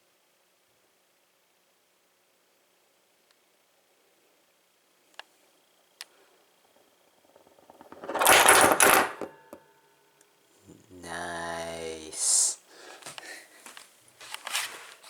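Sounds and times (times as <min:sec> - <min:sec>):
metal padlock rattling on hard surface: 0:07.4 - 0:09.5.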